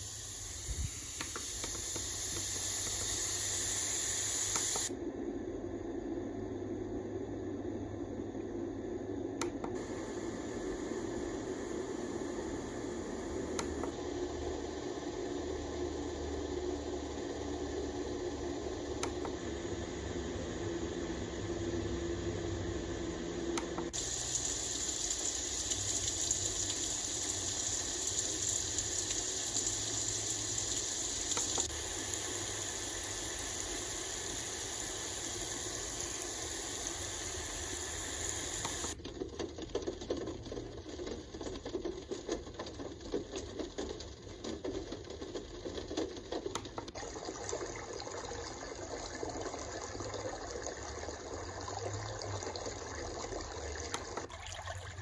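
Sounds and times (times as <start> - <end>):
bright even hiss: 0.0 - 4.9, 23.6 - 39.0
fan-like hum with low tones: 0.0 - 55.0
rough crackling noise: 39.0 - 46.9.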